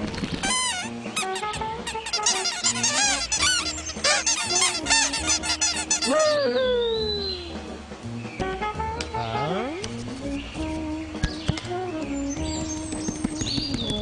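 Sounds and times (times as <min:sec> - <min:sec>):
cartoon birds squawking: 0:00.0 - 0:07.6
music score: 0:00.4 - 0:13.3.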